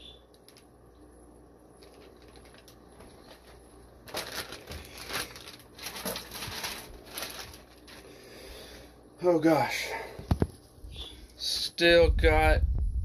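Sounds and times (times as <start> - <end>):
plastic bags crinkling: 1.7 - 8.3.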